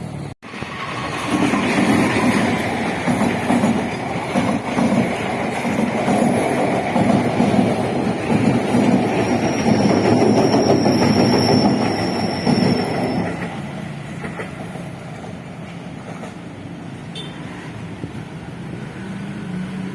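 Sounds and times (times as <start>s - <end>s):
train wheels rumbling and clattering: 0.2s - 16.8s
high wheel squeal: 8.6s - 14.2s.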